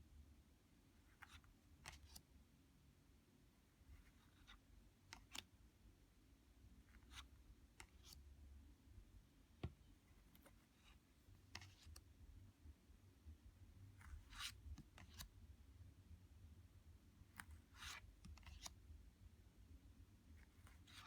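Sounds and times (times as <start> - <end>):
cards being flipped through: 1.2 - 2.2, 4.0 - 5.5, 7.0 - 8.2, 10.4 - 12.0, 14.0 - 15.3, 17.4 - 18.8, 20.4 - 21.0.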